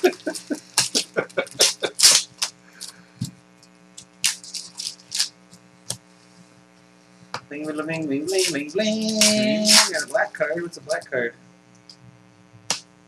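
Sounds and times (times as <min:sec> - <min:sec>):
foil wrappers crinkling and tearing: 0:00.0 - 0:03.0, 0:04.0 - 0:05.4, 0:07.6 - 0:10.3
cards being handled: 0:00.0 - 0:03.3, 0:07.6 - 0:10.2.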